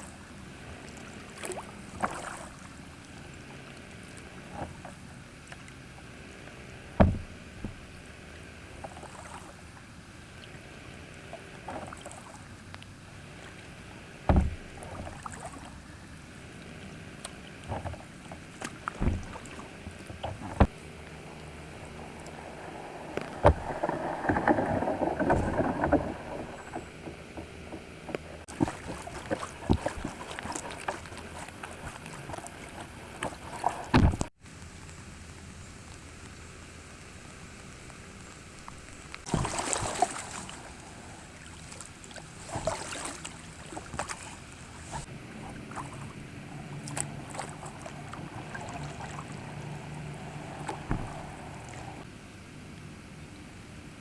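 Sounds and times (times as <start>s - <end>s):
low water wash: 0.0s - 54.0s
knocks against boat: 7.0s - 7.8s, 14.3s - 14.6s, 18.9s - 19.4s, 33.2s - 34.3s, 50.7s - 51.3s
water splashing and dripping: 11.3s - 13.7s, 14.3s - 15.8s, 16.6s - 34.4s, 37.8s - 52.1s.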